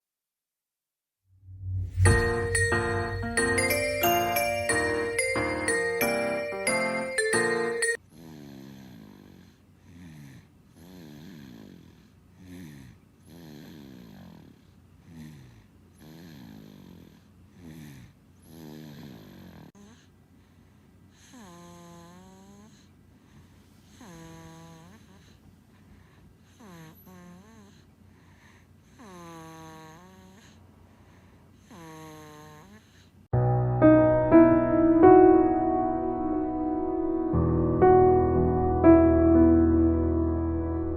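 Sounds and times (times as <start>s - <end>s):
baby snoring: 8.0s - 20.1s, 21.1s - 22.9s, 23.8s - 25.4s, 26.4s - 33.2s.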